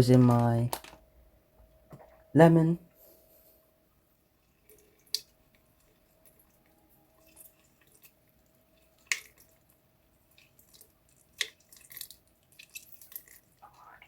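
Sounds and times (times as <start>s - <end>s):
small wet sounds: 4.0s - 14.0s.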